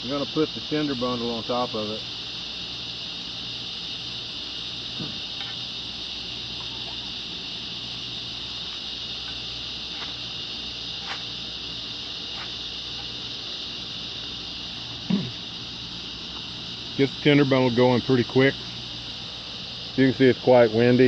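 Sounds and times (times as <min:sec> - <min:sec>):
electric fan blowing: 0:00.0 - 0:21.0
striker scraping flint rod: 0:08.6 - 0:10.2, 0:10.9 - 0:11.4, 0:12.1 - 0:13.2.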